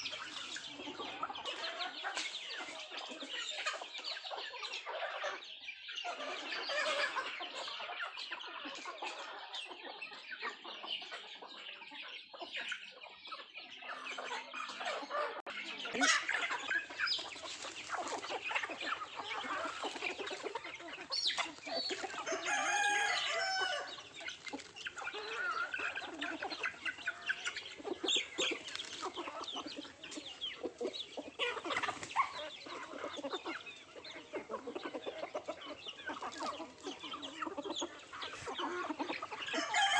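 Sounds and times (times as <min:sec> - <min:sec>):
chickens clucking: 0:00.0 - 0:39.9
rooster crowing: 0:22.2 - 0:23.9, 0:39.5 - 0:39.9
chickens pecking taps: 0:24.0 - 0:25.4.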